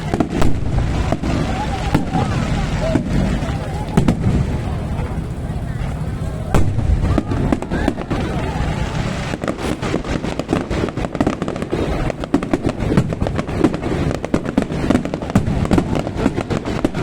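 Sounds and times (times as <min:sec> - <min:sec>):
bottle rockets and firecrackers: 0:00.0 - 0:17.0.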